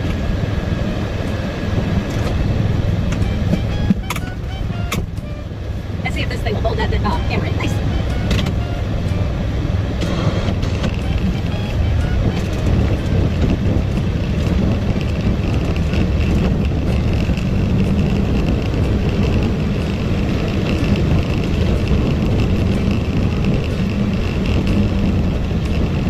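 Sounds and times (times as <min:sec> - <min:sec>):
thin steady whine: 0:00.0 - 0:13.4
utv engine rumble: 0:00.0 - 0:26.0.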